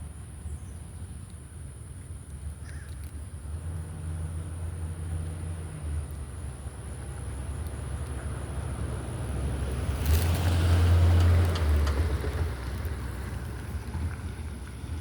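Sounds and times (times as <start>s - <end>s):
vehicle driving past: 3.6s - 15.0s.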